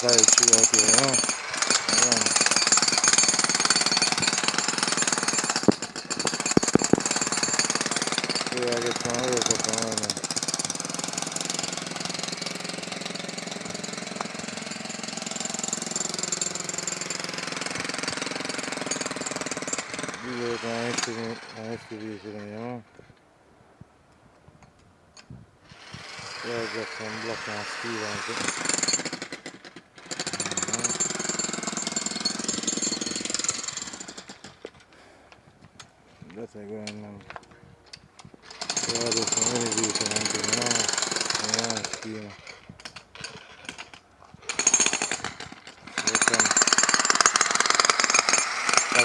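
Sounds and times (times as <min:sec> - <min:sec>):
construction machine hammering: 0:00.0 - 0:10.2.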